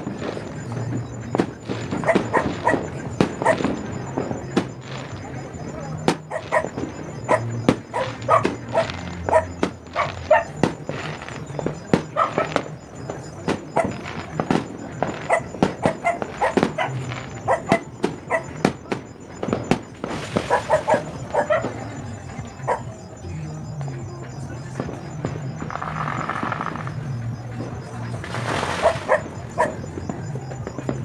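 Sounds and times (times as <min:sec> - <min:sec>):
fireworks exploding: 0:00.0 - 0:31.0
dog barking: 0:01.9 - 0:03.8, 0:06.2 - 0:11.1, 0:11.7 - 0:12.7, 0:13.6 - 0:14.2, 0:15.1 - 0:18.7, 0:20.3 - 0:23.0, 0:28.5 - 0:29.9.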